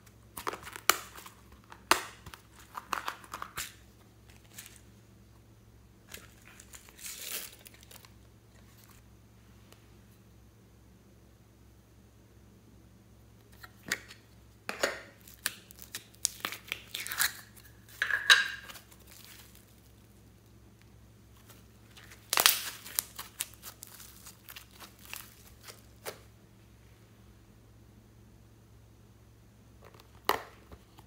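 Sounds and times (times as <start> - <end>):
slime crinkling and crackling: 6.1 - 9.0, 15.2 - 20.1, 21.3 - 26.3.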